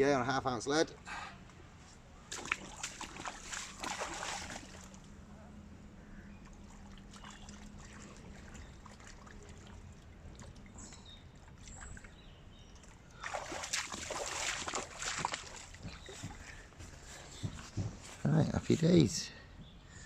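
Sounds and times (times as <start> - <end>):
water splashing and sloshing: 2.2 - 5.2, 6.2 - 18.2.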